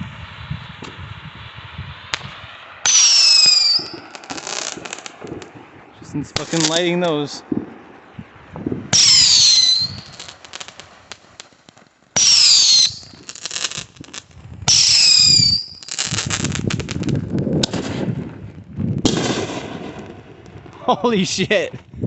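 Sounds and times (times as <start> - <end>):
loud firework burst: 0.0 - 21.4
whistling fireworks: 0.0 - 21.9
fireworks crackling: 0.0 - 22.0.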